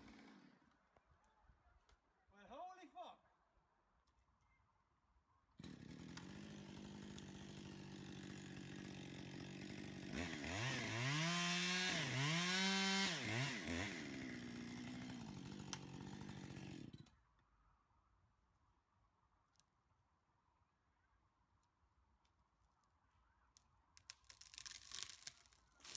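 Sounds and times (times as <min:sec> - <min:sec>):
chainsaw engine idling and revving: 0:00.0 - 0:00.7, 0:05.6 - 0:17.1.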